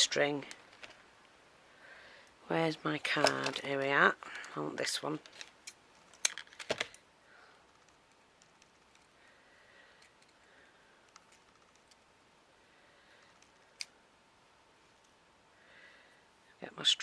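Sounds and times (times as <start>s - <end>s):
craft materials clicking and knocking: 5.2s - 7.0s.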